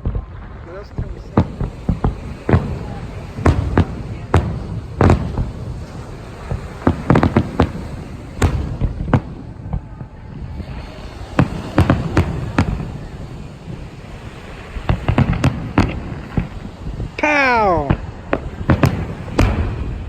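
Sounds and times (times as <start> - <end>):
low rumble: 0.0 - 20.0
firework shell bursts: 11.2 - 20.0.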